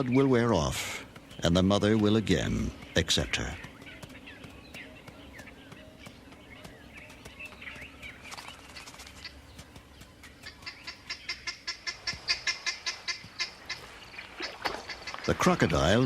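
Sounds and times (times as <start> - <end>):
rapid sharp bird calls: 0.0 - 16.0.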